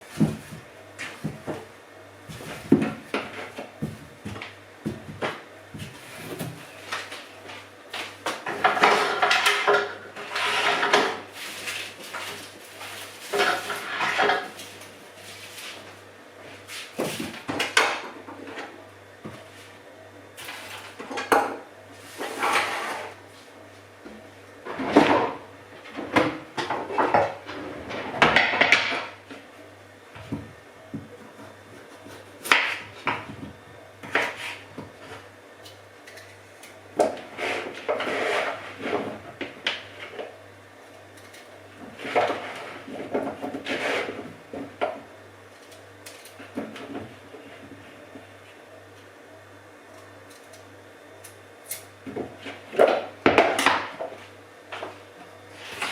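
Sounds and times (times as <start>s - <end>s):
dishes and pans clattering: 8.4s - 11.2s, 13.3s - 14.6s.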